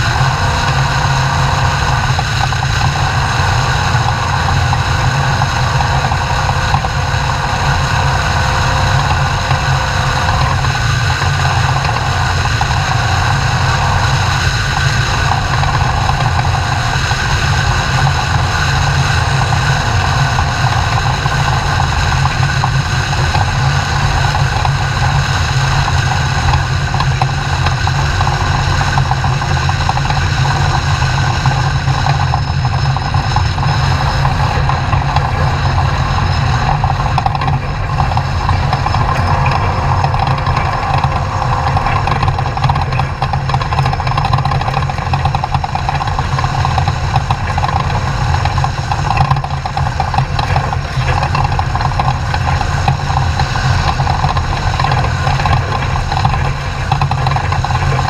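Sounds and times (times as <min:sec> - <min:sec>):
driving noise: 0:00.0 - 0:58.0
truck engine running: 0:00.0 - 0:58.0.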